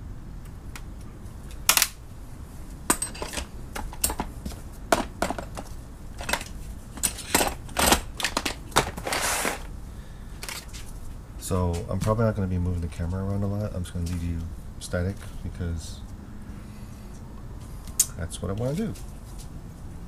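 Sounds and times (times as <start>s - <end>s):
metal keys clinking and clattering: 2.9s - 4.2s, 6.2s - 8.6s.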